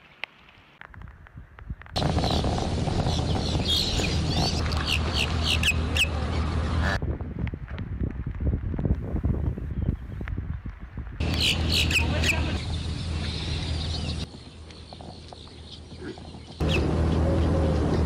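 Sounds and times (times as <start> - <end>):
birds chirping: 2.0 - 7.0, 11.2 - 18.0.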